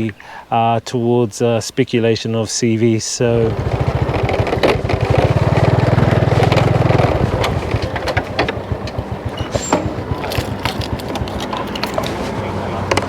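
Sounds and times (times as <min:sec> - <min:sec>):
motorbike engine running: 0:03.3 - 0:13.0
clicks and knocks: 0:03.8 - 0:12.2.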